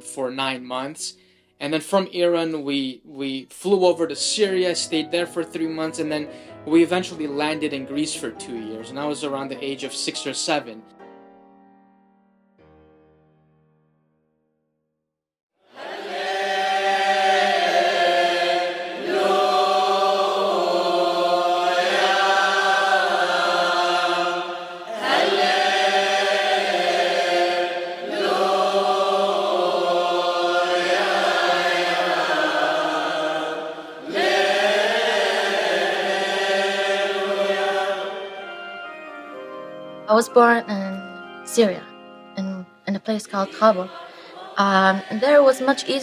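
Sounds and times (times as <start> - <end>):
short breaths: 1.2 - 1.6, 6.3 - 6.6
voices chanting: 15.7 - 38.7.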